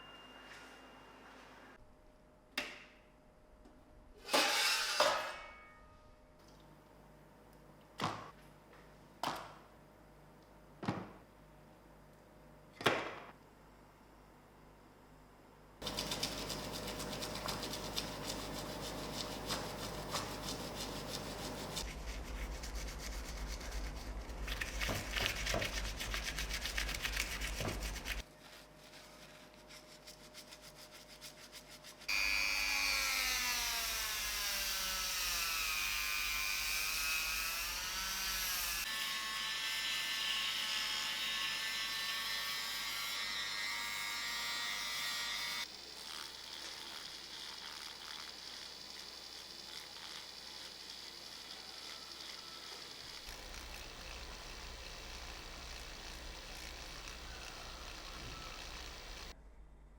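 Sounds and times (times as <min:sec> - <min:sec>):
small electric power tool running: 0:15.8 - 0:22.6, 0:32.1 - 0:59.4.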